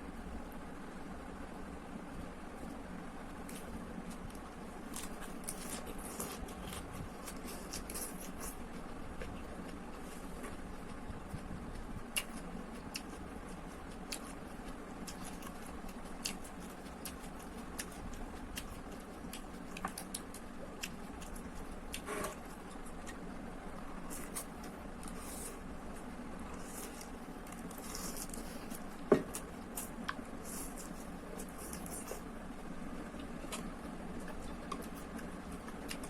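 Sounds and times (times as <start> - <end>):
low background hum: 0.0 - 36.0
person chewing noodles: 4.8 - 23.2, 26.4 - 32.3.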